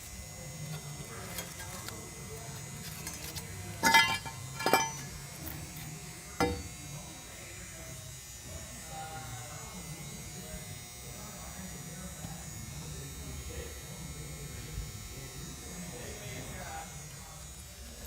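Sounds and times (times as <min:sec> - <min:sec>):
low electric buzz: 0:00.0 - 0:18.0
ringing metallic clinks: 0:03.8 - 0:05.2.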